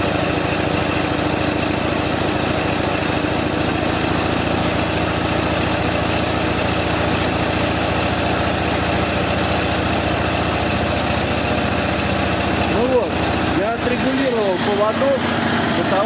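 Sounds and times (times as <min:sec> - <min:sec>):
motorcycle engine idling: 0:00.0 - 0:16.0.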